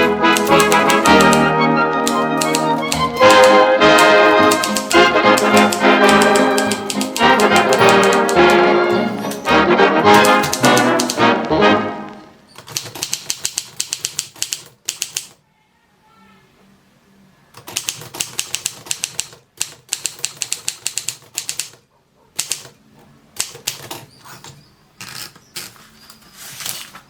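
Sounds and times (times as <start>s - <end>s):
typewriter keystroke clacks: 0.2s - 9.5s, 10.1s - 11.3s, 12.6s - 15.4s, 17.6s - 21.8s, 22.4s - 22.8s, 23.4s - 24.1s.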